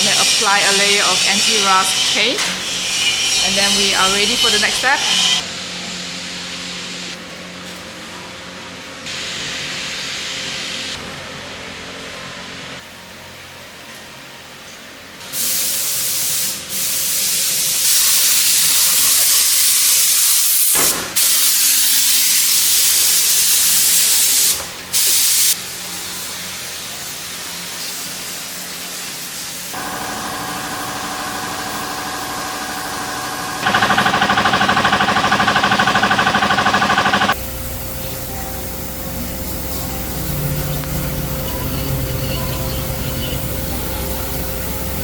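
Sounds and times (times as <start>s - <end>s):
compressed air hissing: 15.4s - 25.6s
motor humming: 29.8s - 45.0s.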